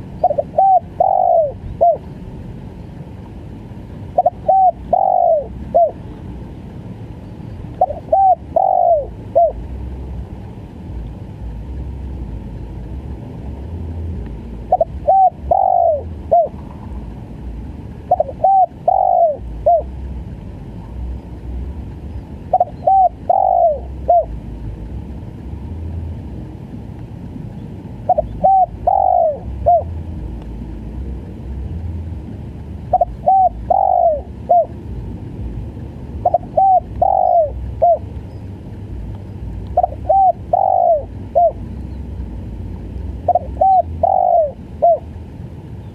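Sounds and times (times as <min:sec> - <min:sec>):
dove cooing: 0:00.0 - 0:02.2, 0:04.1 - 0:06.2, 0:07.8 - 0:09.7, 0:14.6 - 0:16.9, 0:18.0 - 0:20.0, 0:22.4 - 0:24.4, 0:28.0 - 0:30.0, 0:32.8 - 0:34.8, 0:36.2 - 0:38.1, 0:39.7 - 0:42.1, 0:43.2 - 0:45.2
low steady rumble: 0:00.0 - 0:45.9.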